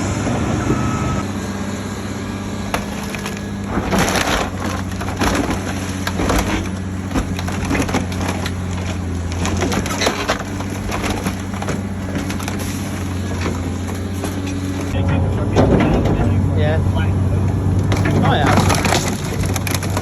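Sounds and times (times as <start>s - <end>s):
diesel machine running: 0.0s - 20.0s
scrap metal crunching and clanking: 1.2s - 20.0s.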